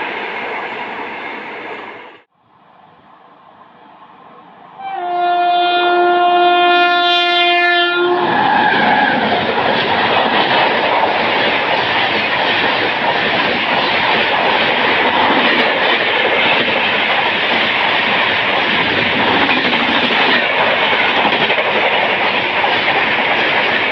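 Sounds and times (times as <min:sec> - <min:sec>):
train running past: 0:00.0 - 0:23.9
locomotive horn: 0:04.8 - 0:09.2.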